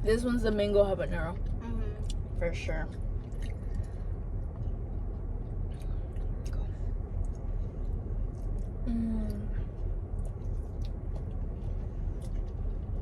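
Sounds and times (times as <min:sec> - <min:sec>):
low rumble inside car: 0:00.0 - 0:13.0
chewing and biting: 0:02.9 - 0:08.8, 0:09.7 - 0:13.0
person humming: 0:08.9 - 0:09.6.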